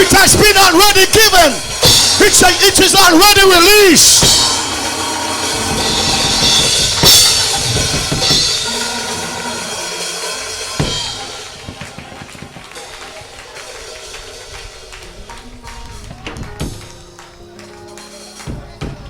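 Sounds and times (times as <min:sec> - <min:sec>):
drum kit crashing hits: 0:00.0 - 0:13.5
sustained keyboard chords: 0:00.0 - 0:13.6.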